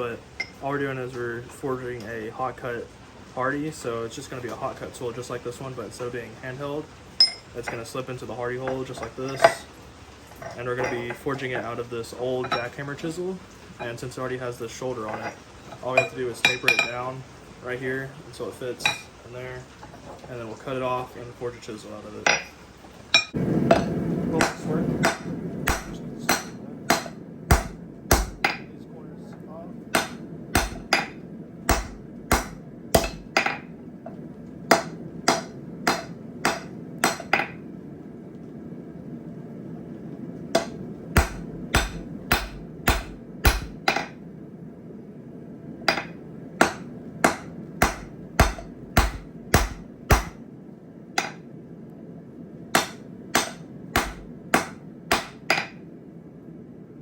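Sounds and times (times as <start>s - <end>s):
hammer striking metal on anvil: 7.2s - 7.8s, 16.0s - 17.0s, 18.8s - 19.1s, 23.2s - 28.7s, 29.9s - 33.7s, 34.7s - 37.6s, 40.6s - 44.2s, 45.9s - 50.4s, 51.2s - 51.4s, 52.8s - 55.8s.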